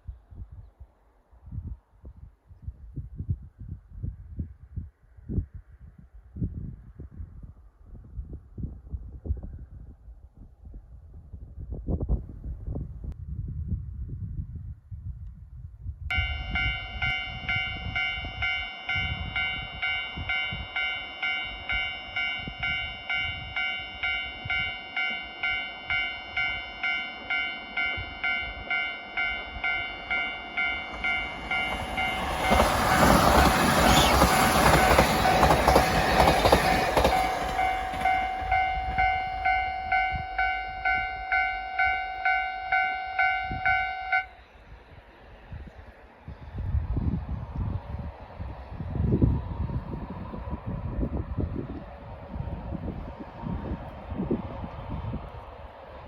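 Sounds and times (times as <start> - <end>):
level crossing bell dinging: 16.1 - 32.6, 37.2 - 44.3
train rumbling over crossing: 16.1 - 56.0.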